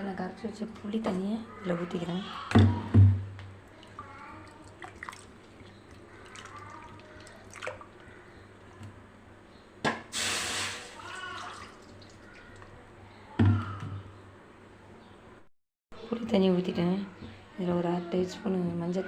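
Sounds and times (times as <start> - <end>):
water pouring and splashing: 3.7 - 8.0, 10.2 - 12.7.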